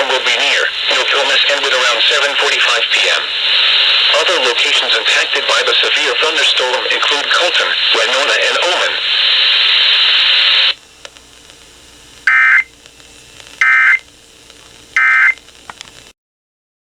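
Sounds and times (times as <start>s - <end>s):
loud radio hiss: 0.0s - 16.1s
warbling data tones: 12.2s - 12.8s, 13.6s - 14.1s, 15.0s - 15.4s.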